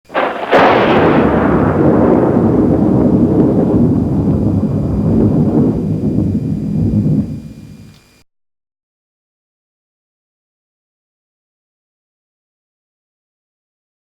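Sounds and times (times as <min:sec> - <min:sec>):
thunderclap with rolling rumble: 0:00.1 - 0:08.0.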